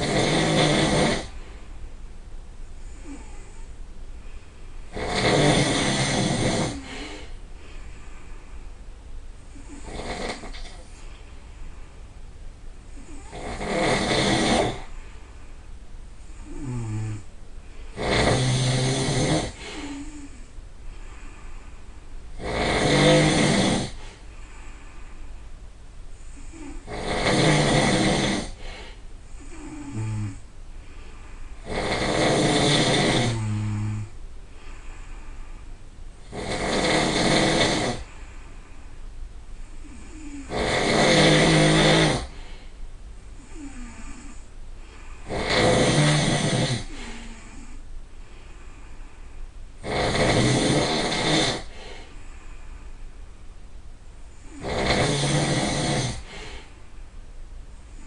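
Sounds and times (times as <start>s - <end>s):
person snoring loudly: 0.0s - 1.4s, 2.9s - 3.7s, 4.9s - 7.3s, 9.6s - 10.9s, 13.0s - 14.9s, 16.4s - 17.3s, 17.9s - 20.4s, 22.4s - 24.2s, 26.3s - 30.4s, 31.6s - 34.2s, 36.2s - 38.2s, 39.8s - 42.6s, 43.4s - 44.4s, 45.2s - 47.8s, 49.8s - 52.2s, 54.4s - 56.7s.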